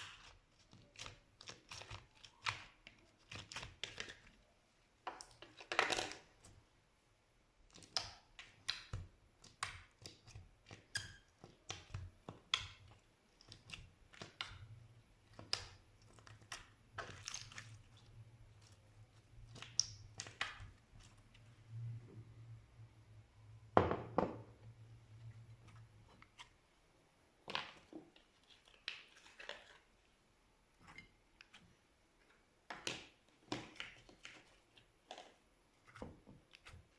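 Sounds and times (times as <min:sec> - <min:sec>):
slime squelching by hand: 0:00.0 - 0:04.6, 0:07.6 - 0:22.4, 0:27.4 - 0:36.9
faint low hum: 0:17.5 - 0:27.4.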